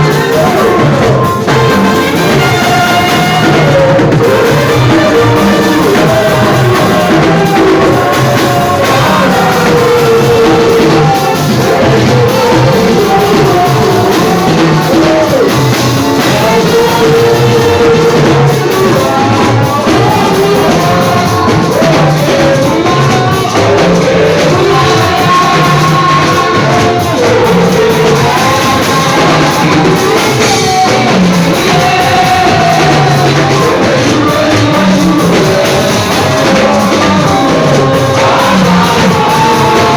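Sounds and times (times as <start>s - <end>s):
worship singing with drums: 0.0s - 39.9s.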